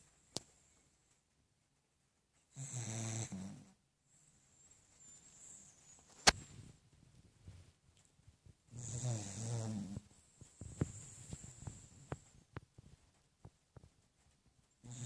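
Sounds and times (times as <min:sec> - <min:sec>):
dog snoring: 0:02.5 - 0:03.8, 0:08.7 - 0:10.1.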